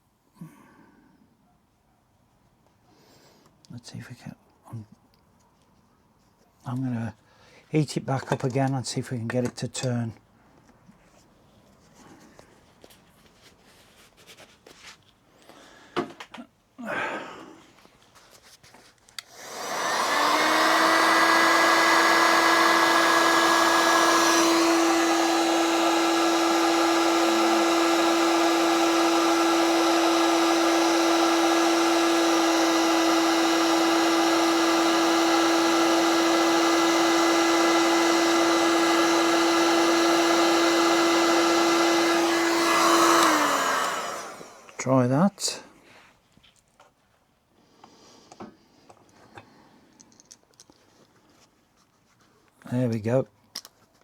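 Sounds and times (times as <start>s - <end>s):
hot-air blower running: 19.2s - 44.9s.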